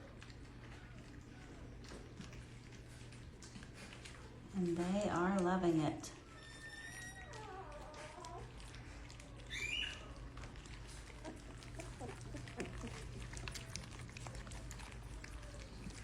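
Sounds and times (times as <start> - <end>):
puppies lapping wet food: 0.0 - 16.0
high puppy squeal: 6.2 - 8.6, 9.2 - 10.3
puppy grunts: 7.4 - 16.0.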